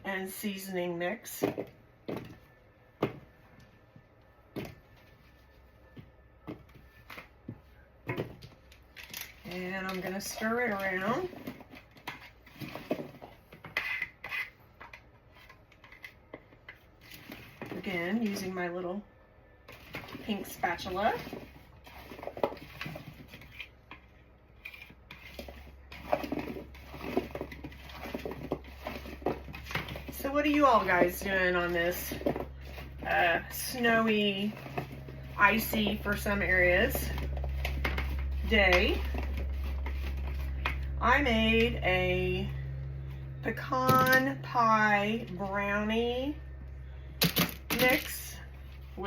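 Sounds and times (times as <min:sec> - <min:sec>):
spatula stirring potatoes in bowl: 0:19.7 - 0:41.8.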